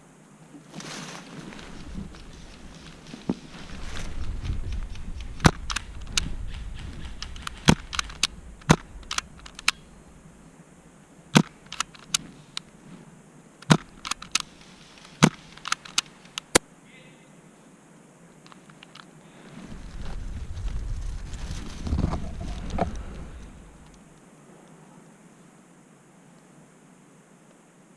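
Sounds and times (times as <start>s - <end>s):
sharp clicks and pops: 1.6s - 10.1s, 11.3s - 12.8s, 13.6s - 16.7s, 18.4s - 19.1s
low rumble: 19.7s - 24.1s.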